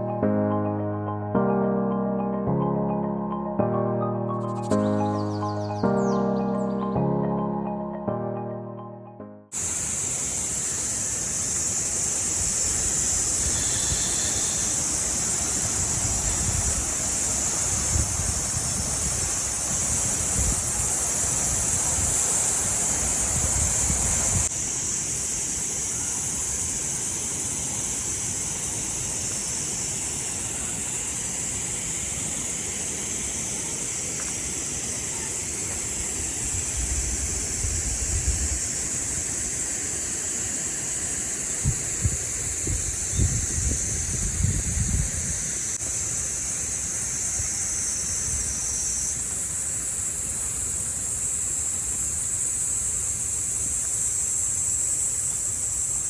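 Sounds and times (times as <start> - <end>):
stream rushing over rocks: 9.6 - 43.1
wind buffeting microphone: 12.3 - 24.5, 36.2 - 39.0, 41.6 - 45.8.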